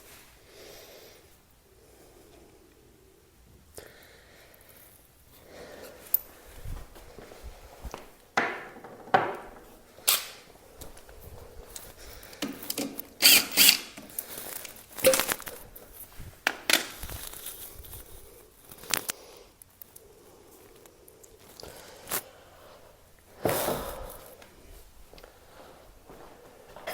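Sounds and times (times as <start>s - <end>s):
hand tools clicking and clattering: 11.7s - 17.8s.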